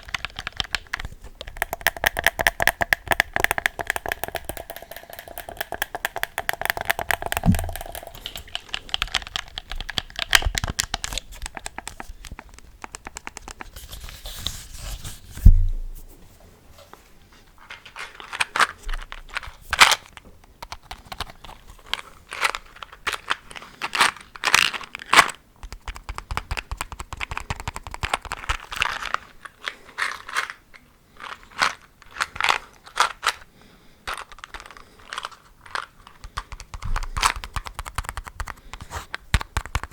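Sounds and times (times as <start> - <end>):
crackling and clicking: 0.0 - 13.8
low thump: 15.4 - 16.0.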